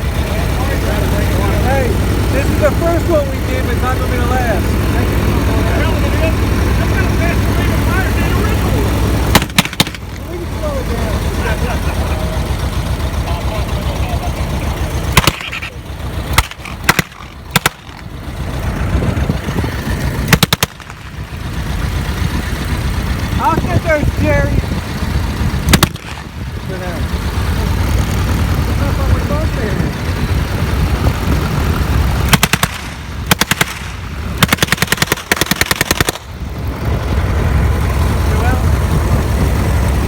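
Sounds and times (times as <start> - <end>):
vehicle engine idling: 0.0 - 40.0
machine gun noisemaker bangs: 9.3 - 10.3, 15.1 - 15.7, 16.3 - 18.1, 20.2 - 21.4, 25.6 - 26.3, 32.2 - 36.4.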